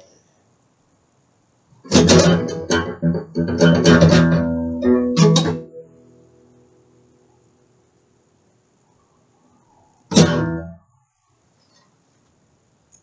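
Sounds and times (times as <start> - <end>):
guitar strummed chords: 1.8 - 7.1, 10.1 - 10.8.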